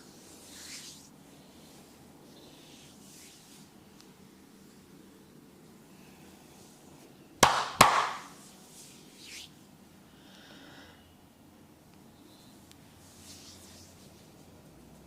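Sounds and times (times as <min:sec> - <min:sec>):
sharp hand smacks: 0:07.4 - 0:08.3.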